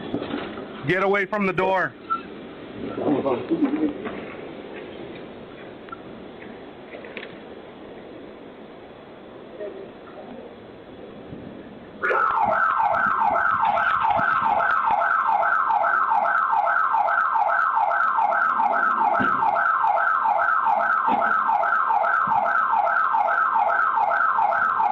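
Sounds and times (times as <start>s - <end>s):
electronic alarm siren whooping: 12.0s - 24.9s.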